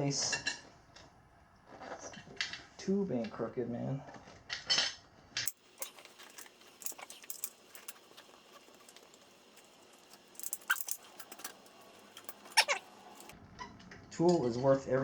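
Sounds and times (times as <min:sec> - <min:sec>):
light clicks and metallic rattles: 0:04.5 - 0:13.4.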